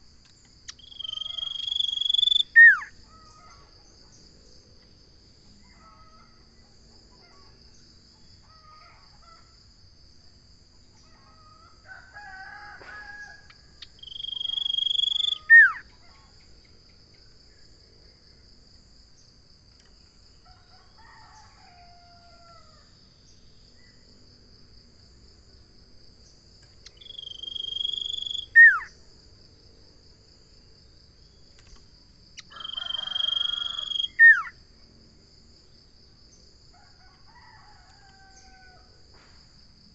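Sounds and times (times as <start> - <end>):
high insect drone: 0.0 - 39.9
bird whistling call: 0.7 - 2.9, 14.1 - 15.8, 27.1 - 28.9, 32.6 - 34.5.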